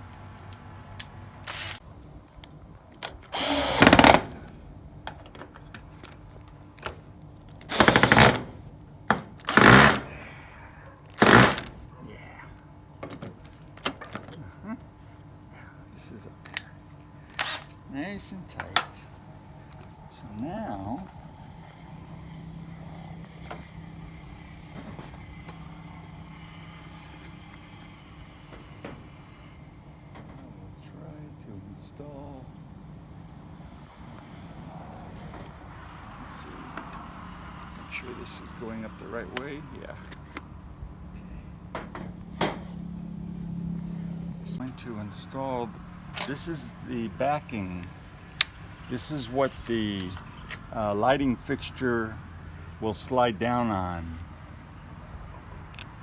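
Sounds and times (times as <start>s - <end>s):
power drill driving a screw: 1.4s - 1.8s, 3.1s - 4.6s, 7.6s - 8.6s, 9.4s - 10.1s, 11.1s - 11.8s, 17.3s - 17.8s
low engine hum: 19.1s - 56.0s.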